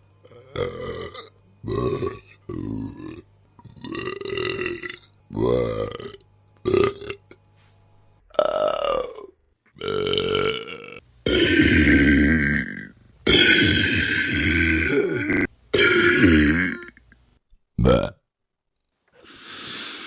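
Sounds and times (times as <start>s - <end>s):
person burping: 0.2s - 7.4s, 8.3s - 17.2s, 17.8s - 18.3s.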